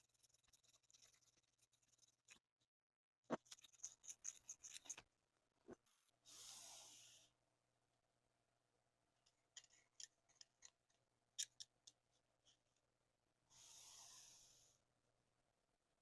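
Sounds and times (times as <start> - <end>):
small tools clicking and tapping: 9.2 - 12.6.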